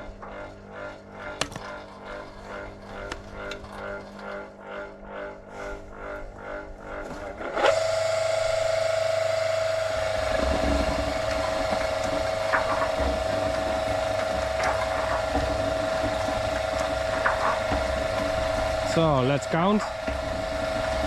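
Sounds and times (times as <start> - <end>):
electric motor whining hum: 0.0 - 21.0.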